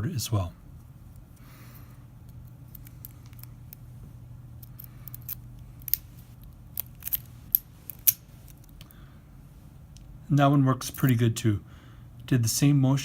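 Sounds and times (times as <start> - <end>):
lock pick clicking and scraping: 4.6 - 8.8.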